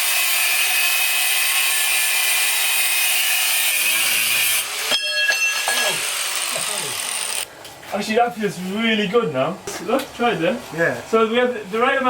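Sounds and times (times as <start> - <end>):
grinder cutting steel: 0.0 - 7.5
ringing steel clanks: 4.9 - 6.0.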